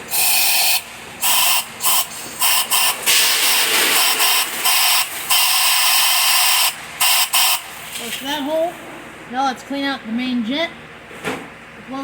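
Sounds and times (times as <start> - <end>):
compressed air blasts hissing: 0.1 - 7.8.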